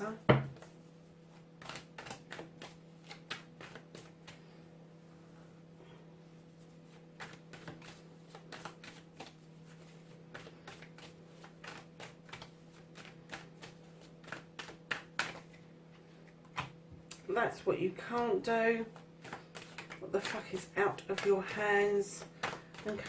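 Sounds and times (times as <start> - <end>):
cards being shuffled: 0.5 - 4.6, 6.6 - 15.6, 18.9 - 23.0.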